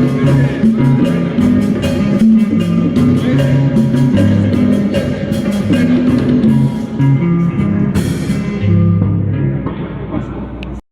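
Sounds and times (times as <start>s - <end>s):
live band playing: 0.0s - 10.8s.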